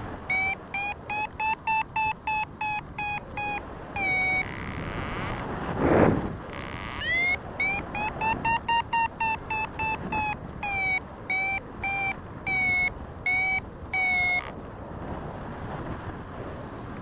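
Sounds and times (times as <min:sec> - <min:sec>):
variometer beeping: 0:00.3 - 0:05.4, 0:06.5 - 0:14.5.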